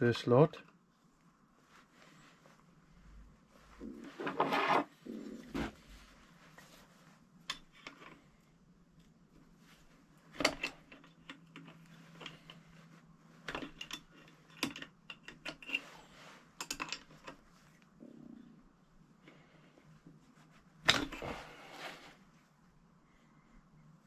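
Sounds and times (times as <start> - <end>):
faint steady hum: 0.0 - 24.0
metal parts and tools clicking: 13.4 - 15.9, 16.6 - 17.4.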